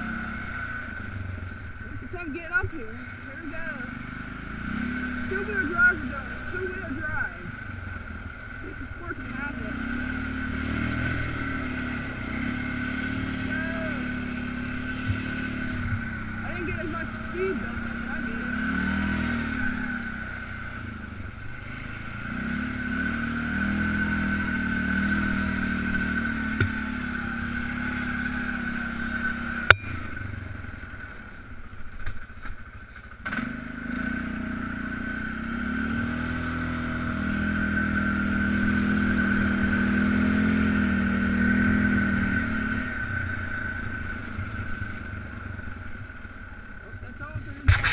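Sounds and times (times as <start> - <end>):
atv engine revving: 0.0 - 47.9.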